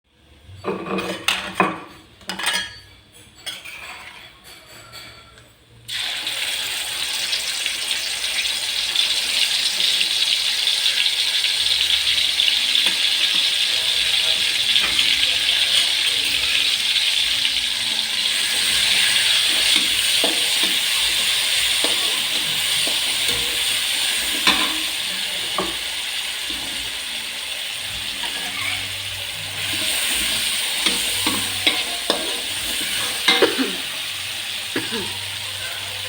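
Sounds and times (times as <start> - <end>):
food sizzling in hot oil: 5.9 - 36.0
spatula scraping a pan: 18.2 - 26.8, 28.0 - 33.6.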